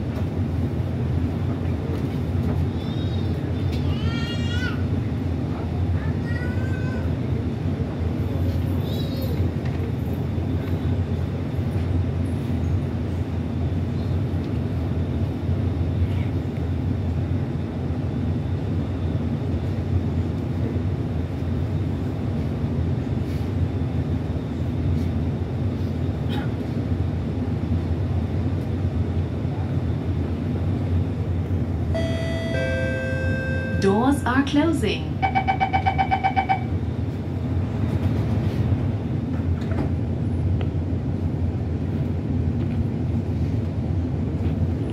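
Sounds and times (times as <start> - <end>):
train air-conditioning hum: 0.0 - 44.9
faint high steady tone: 32.0 - 34.4.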